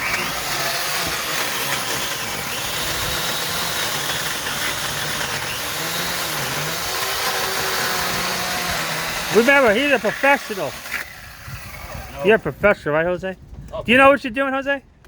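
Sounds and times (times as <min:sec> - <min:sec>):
electric chainsaw running: 0:00.0 - 0:12.5.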